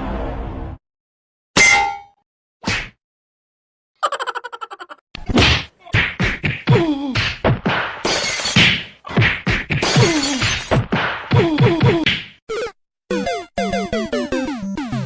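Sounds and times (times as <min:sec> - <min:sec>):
comedy whacks and crashes: 0:05.2 - 0:12.4.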